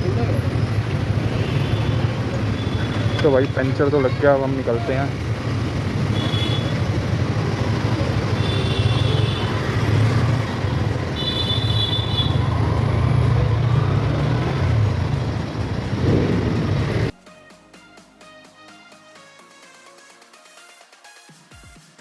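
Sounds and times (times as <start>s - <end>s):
motorcycle engine rumble: 0.0s - 17.1s.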